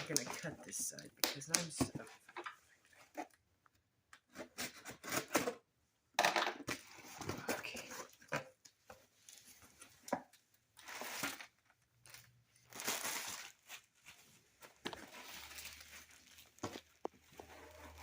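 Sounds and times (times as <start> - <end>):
packaging tearing and crinkling: 10.8 - 13.9, 14.9 - 18.0.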